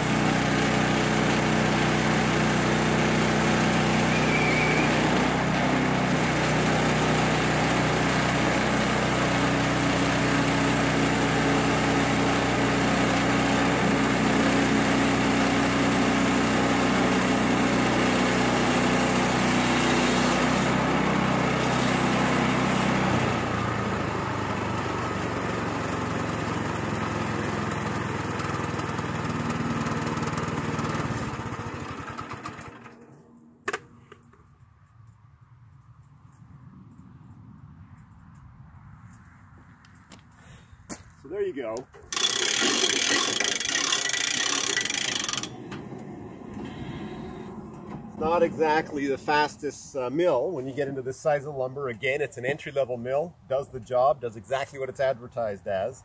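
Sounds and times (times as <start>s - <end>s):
band saw cutting log: 0.0s - 24.2s, 42.0s - 51.0s
small gasoline engine running: 0.0s - 34.4s, 41.9s - 48.8s.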